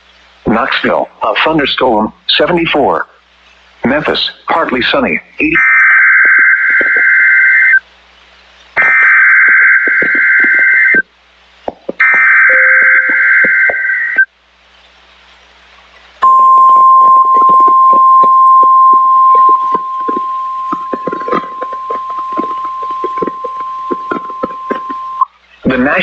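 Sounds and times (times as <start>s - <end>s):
crackling radio static: 0.4s - 3.1s, 3.8s - 7.8s, 8.7s - 11.1s, 11.7s - 14.3s, 16.2s - 26.0s
steady alarm tone: 5.4s - 7.8s, 8.8s - 11.0s, 12.0s - 14.3s, 16.2s - 25.3s.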